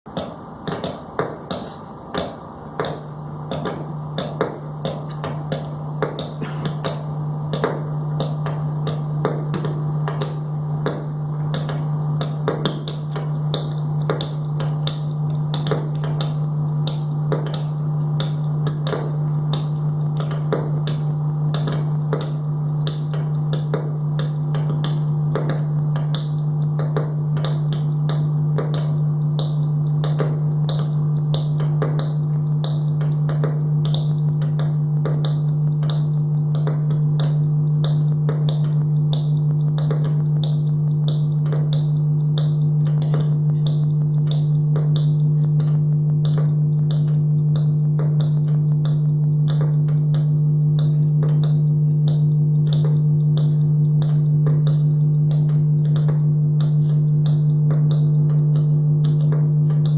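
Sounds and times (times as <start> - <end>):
steady low hum: 0.1 - 59.9.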